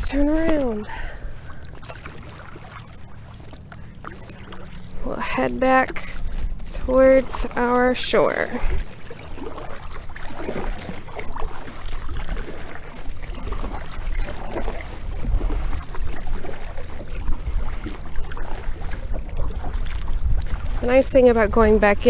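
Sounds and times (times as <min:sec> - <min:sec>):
wind rumble on microphone: 0:00.0 - 0:03.2, 0:04.0 - 0:22.0
paddle strokes in water: 0:00.0 - 0:22.0
water lapping at hull: 0:00.0 - 0:22.0.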